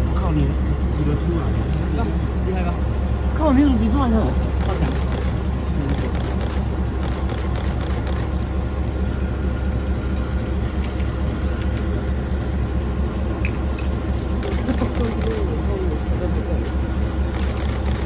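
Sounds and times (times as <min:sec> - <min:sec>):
diesel locomotive engine droning: 0:00.0 - 0:18.0
camera shutters clicking: 0:04.6 - 0:08.5, 0:13.8 - 0:15.4, 0:17.3 - 0:18.0.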